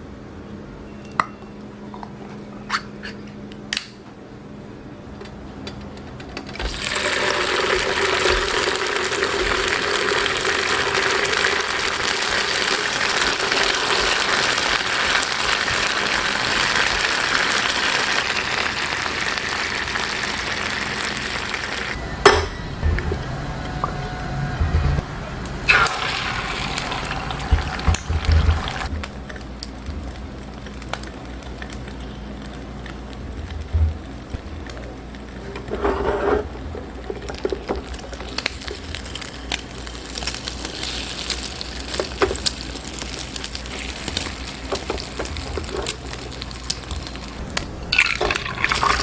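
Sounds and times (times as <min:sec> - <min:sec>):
low hum: 0:21.4 - 0:29.6.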